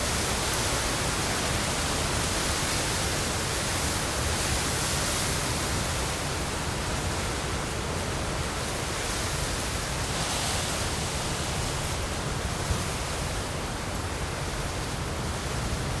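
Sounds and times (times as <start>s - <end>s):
wind blowing through trees: 0.0s - 16.0s
leaves rustling: 8.0s - 14.9s.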